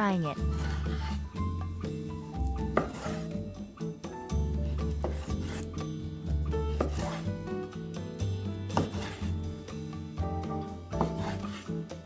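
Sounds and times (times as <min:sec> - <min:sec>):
knife cutting on wooden board: 0:00.4 - 0:01.3, 0:02.5 - 0:03.4, 0:04.6 - 0:05.9, 0:06.6 - 0:07.4, 0:08.7 - 0:09.5, 0:10.9 - 0:12.0
background music with bass line: 0:00.4 - 0:12.0.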